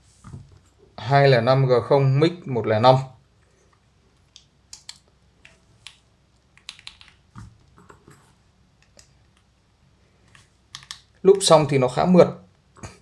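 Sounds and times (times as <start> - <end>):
mechanical keyboard keys clacking: 6.6 - 7.2.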